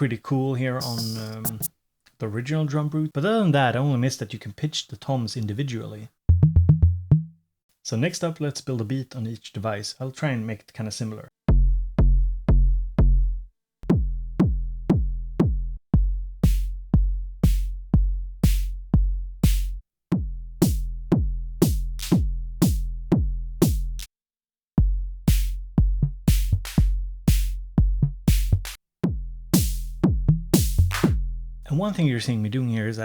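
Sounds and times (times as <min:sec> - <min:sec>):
sharp hissy drum hits: 0:00.8 - 0:01.7, 0:29.6 - 0:29.9, 0:30.6 - 0:31.2
boomy kick drum: 0:06.3 - 0:07.3, 0:11.5 - 0:24.1, 0:24.8 - 0:31.3.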